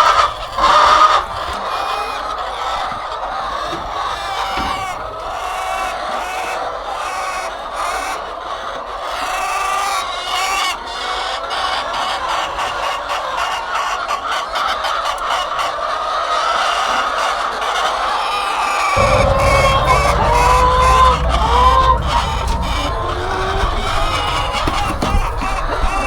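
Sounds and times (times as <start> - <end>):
hens clucking: 19.0 - 26.0.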